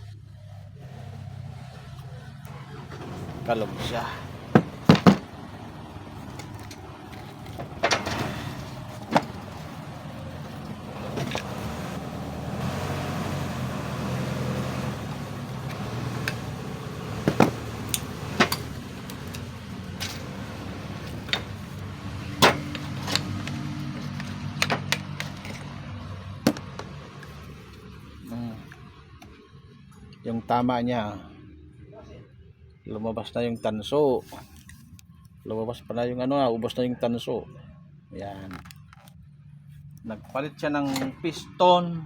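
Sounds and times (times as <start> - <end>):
low mechanical hum: 0.0 - 36.6
metallic clicks and knocks: 17.2 - 25.8.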